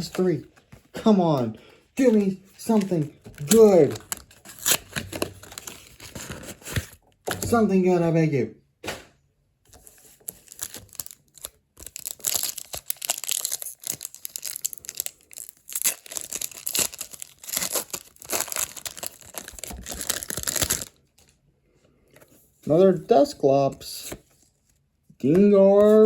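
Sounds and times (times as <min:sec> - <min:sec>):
foil wrapper tearing and crinkling: 0:03.4 - 0:07.0, 0:10.2 - 0:21.0.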